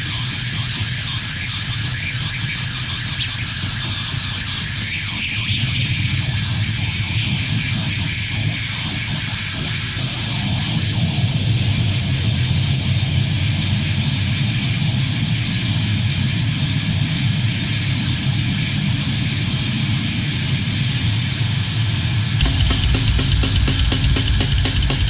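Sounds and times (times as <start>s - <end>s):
distorted electric guitar: 22.4s - 25.0s
full band with drums: 22.4s - 25.0s.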